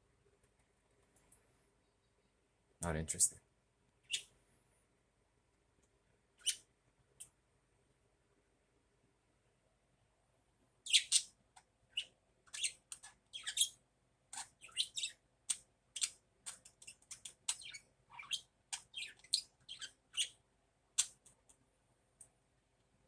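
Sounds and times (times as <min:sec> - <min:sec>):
budgerigar chirping: 0:04.1 - 0:04.3, 0:06.4 - 0:06.6, 0:10.9 - 0:11.3, 0:12.0 - 0:13.8, 0:14.4 - 0:15.2, 0:16.8 - 0:20.3.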